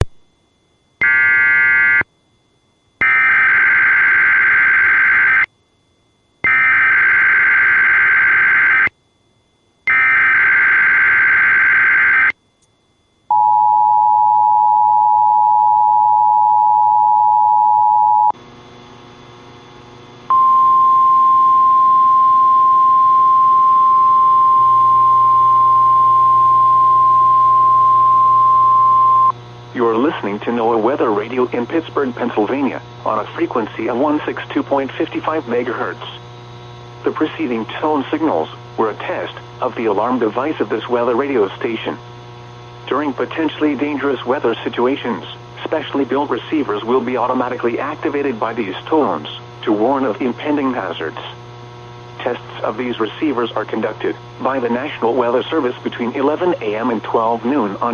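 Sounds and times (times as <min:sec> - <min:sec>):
steady warning alarm tone: 0:00.0 - 0:18.4, 0:20.3 - 0:41.5
screechy digital data bursts: 0:03.0 - 0:05.5, 0:06.4 - 0:08.9, 0:09.9 - 0:12.4.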